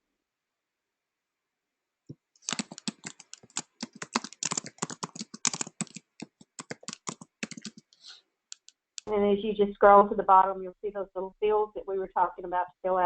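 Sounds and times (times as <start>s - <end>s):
computer keyboard typing: 2.4s - 8.7s.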